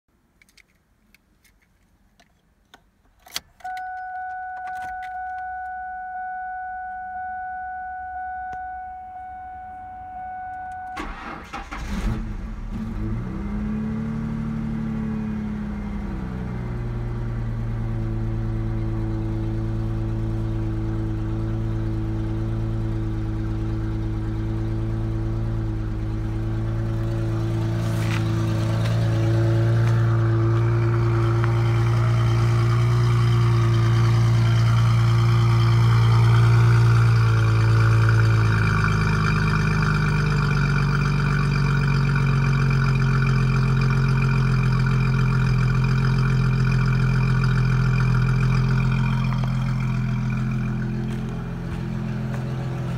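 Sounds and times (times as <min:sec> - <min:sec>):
car engine starting and idling: 0:02.8 - 0:52.9
car warning chime dinging: 0:03.6 - 0:11.8.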